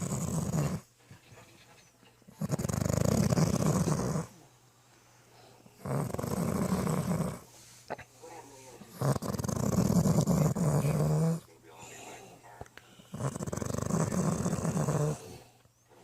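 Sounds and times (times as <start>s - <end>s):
loud rasping snores: 0.0s - 0.9s, 2.4s - 4.3s, 5.8s - 7.5s, 8.9s - 11.4s, 13.1s - 15.5s
quiet breathing: 3.6s - 16.0s.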